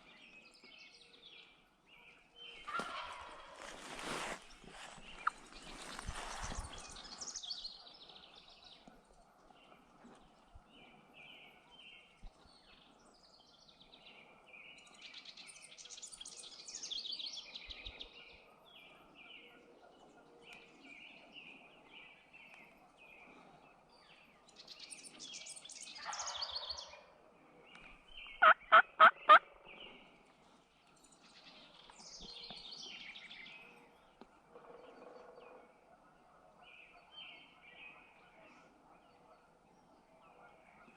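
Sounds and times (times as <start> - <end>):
small birds chirping: 0.0 - 40.9
turkey gobbling: 2.7 - 3.7, 28.4 - 29.4.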